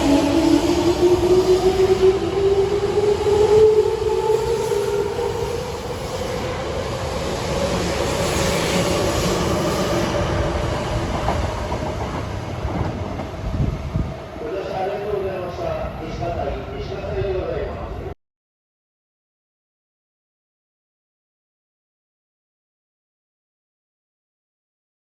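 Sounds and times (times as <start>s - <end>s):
train wheels rumbling: 0.0s - 17.0s.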